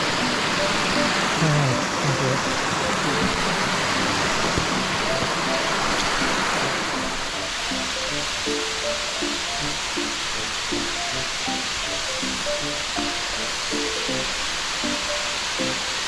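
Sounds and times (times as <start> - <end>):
faint voices: 0.0 - 5.8
waterfall rushing: 0.0 - 16.0.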